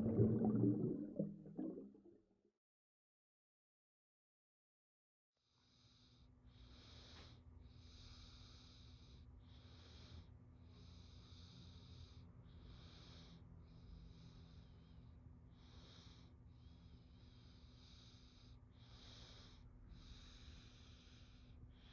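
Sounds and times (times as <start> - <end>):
low steady hum: 0.0 - 1.9
underwater breathing: 0.0 - 2.1.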